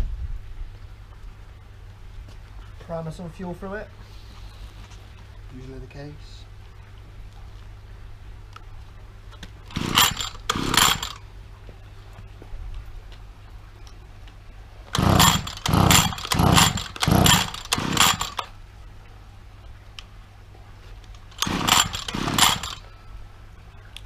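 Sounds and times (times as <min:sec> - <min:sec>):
recoil starter cord yanks: 0:09.7 - 0:11.2, 0:14.9 - 0:18.5, 0:21.2 - 0:22.9
trimmer engine turning over: 0:09.7 - 0:11.2, 0:14.9 - 0:18.5, 0:21.3 - 0:22.9.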